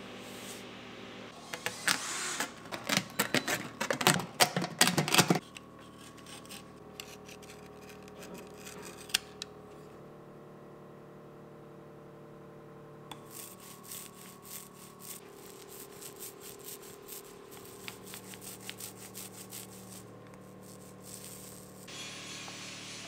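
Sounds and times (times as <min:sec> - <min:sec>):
steady hiss: 0:13.1 - 0:23.0
hand sanding wood: 0:13.2 - 0:22.3.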